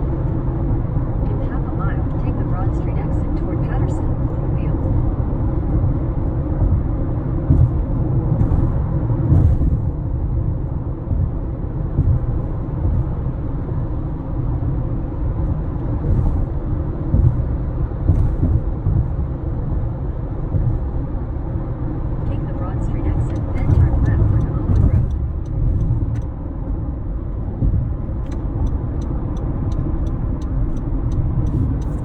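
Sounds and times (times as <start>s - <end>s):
road and engine rumble in car: 0.0s - 32.0s
faint dashboard rattle clicks: 23.1s - 26.4s, 27.4s - 32.0s.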